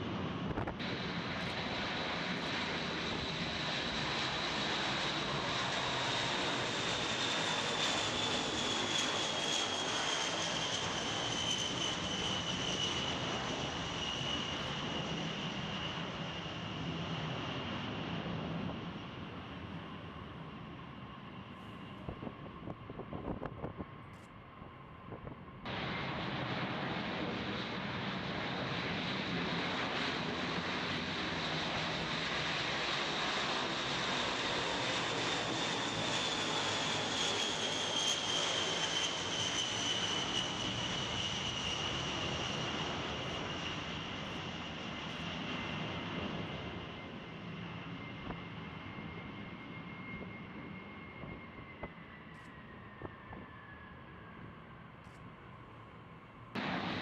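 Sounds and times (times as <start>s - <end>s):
jet engines rushing: 0.0s - 57.0s.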